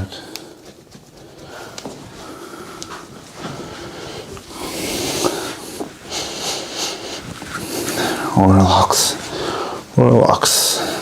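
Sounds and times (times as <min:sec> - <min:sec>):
person breathing heavily: 0:00.0 - 0:11.0.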